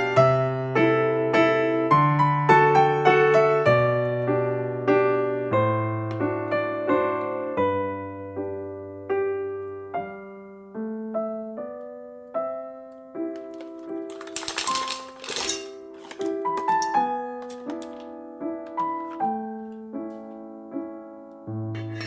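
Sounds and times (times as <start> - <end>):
gentle piano tune: 0.0 - 22.0
rustling or scraping noise: 13.4 - 18.1.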